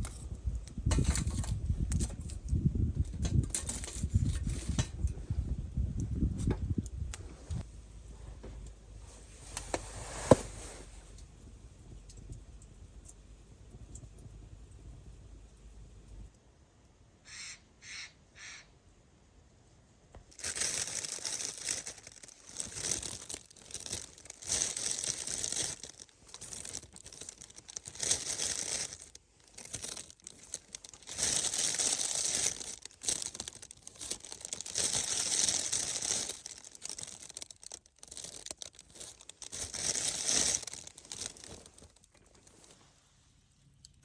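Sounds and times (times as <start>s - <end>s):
snow crunching: 9.1s - 11.1s.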